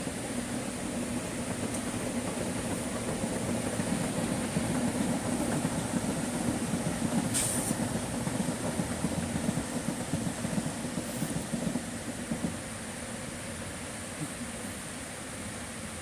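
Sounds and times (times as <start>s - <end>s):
short sharp hiss: 7.3s - 7.8s.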